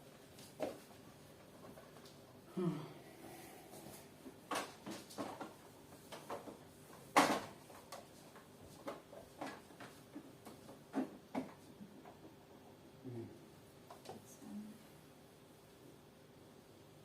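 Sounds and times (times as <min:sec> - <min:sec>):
clicks and knocks of hard parts: 0:04.5 - 0:08.0.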